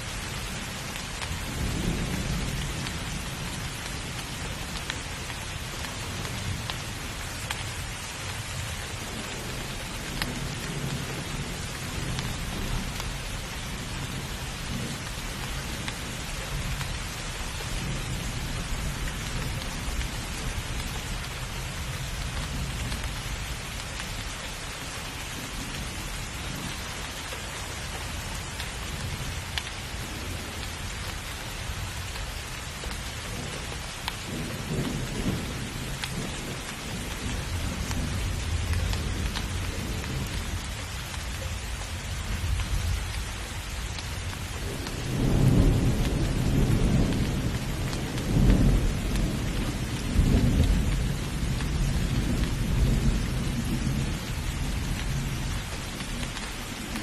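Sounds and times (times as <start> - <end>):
heavy rain falling: 0.0 - 57.0
rolling thunder: 44.5 - 57.0.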